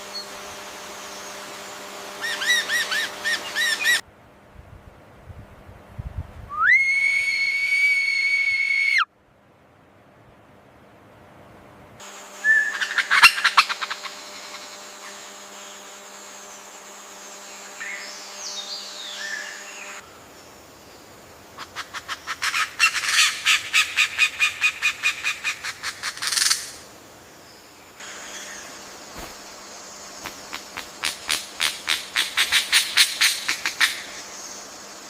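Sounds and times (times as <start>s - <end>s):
bird chattering calls: 2.2s - 4.0s, 12.5s - 15.2s, 21.6s - 26.8s, 30.2s - 34.5s
bird whistled note: 12.4s - 13.0s.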